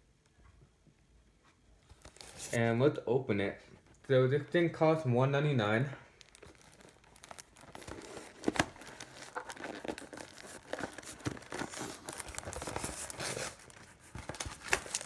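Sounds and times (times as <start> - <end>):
packaging tearing and crinkling: 1.9 - 2.7, 6.1 - 15.0.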